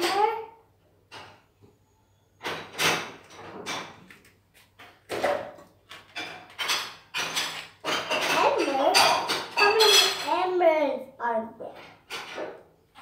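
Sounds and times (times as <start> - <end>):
objects scraping and clattering: 2.4 - 10.5, 11.6 - 13.0.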